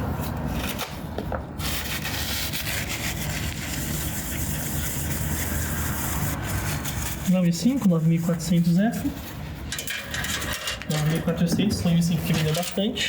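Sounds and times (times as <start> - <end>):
scratchy rubbing: 1.6 - 9.6.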